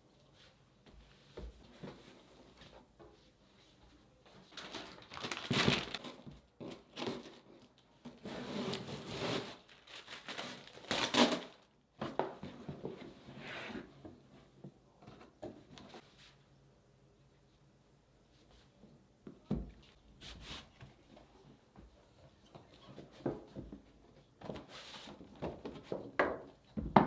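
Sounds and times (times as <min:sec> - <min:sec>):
packaging crinkling and rustling: 0:04.5 - 0:11.8.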